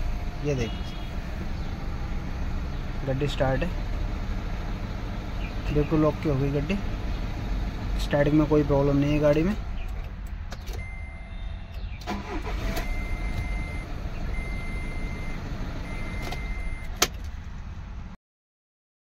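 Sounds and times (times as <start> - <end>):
diesel engine idling: 0.0 - 16.9
high electronic beep: 10.8 - 11.5, 14.4 - 16.9.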